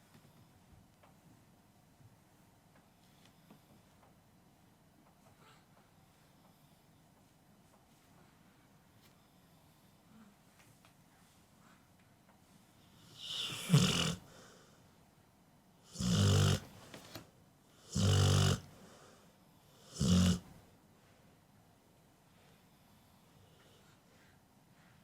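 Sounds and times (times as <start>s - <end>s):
dog snoring: 12.9s - 14.3s, 15.9s - 16.7s, 17.8s - 18.7s, 19.8s - 20.5s.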